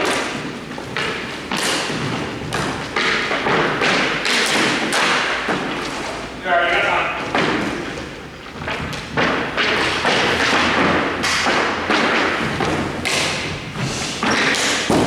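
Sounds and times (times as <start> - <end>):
hockey stick and puck thuds: 0.0 - 6.1, 7.3 - 15.0
skates scraping on ice: 8.7 - 15.0.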